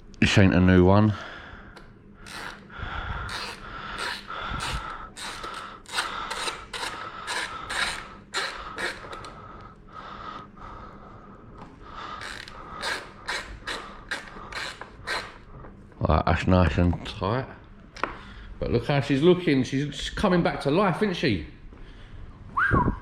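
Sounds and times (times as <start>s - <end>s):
hand ratchet clicking: 2.2s - 2.7s, 3.3s - 9.4s, 12.2s - 15.4s.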